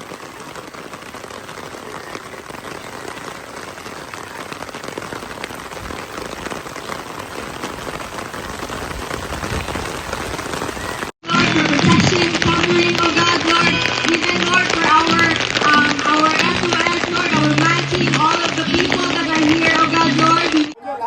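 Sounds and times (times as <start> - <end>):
rain falling: 0.0 - 20.8
music: 11.2 - 20.7.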